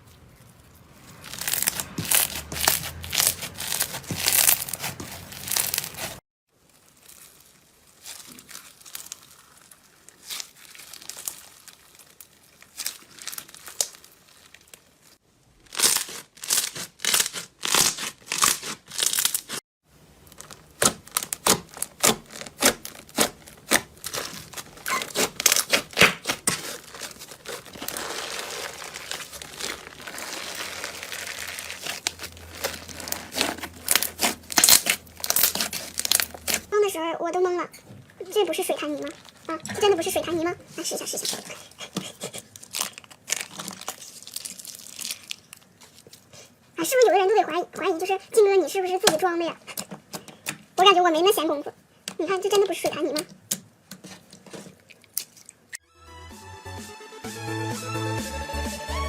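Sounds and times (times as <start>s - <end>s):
slime squishing: 0.0s - 51.4s, 52.0s - 55.8s
slime crackling and popping: 1.0s - 19.6s, 20.2s - 36.8s, 38.2s - 47.1s.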